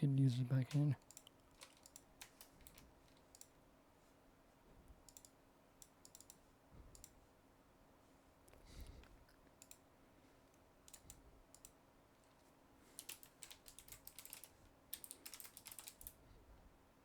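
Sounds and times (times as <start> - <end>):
keyboard typing: 0.7 - 3.5, 5.0 - 6.4, 13.0 - 16.2.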